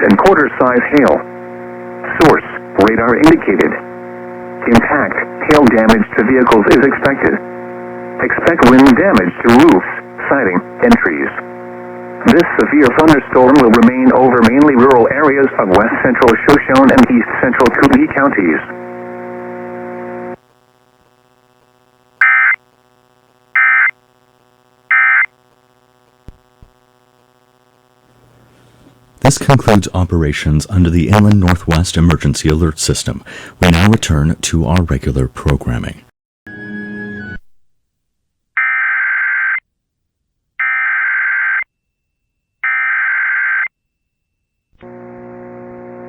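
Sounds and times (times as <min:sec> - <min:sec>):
faint steady hum: 0:00.0 - 0:36.1, 0:44.8 - 0:46.0
buzzy screeching data tones: 0:22.2 - 0:22.6, 0:23.5 - 0:24.0, 0:24.9 - 0:25.4, 0:40.6 - 0:41.7, 0:42.6 - 0:43.7
digital data tone bursts: 0:24.9 - 0:25.3.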